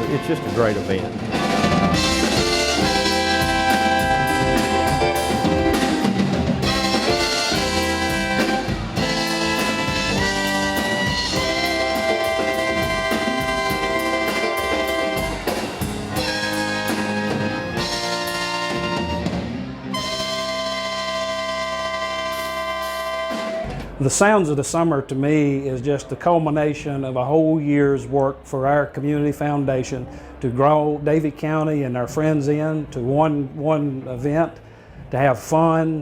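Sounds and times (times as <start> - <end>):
brass horns playing chords: 0.0 - 24.0
drum kit: 0.0 - 24.2.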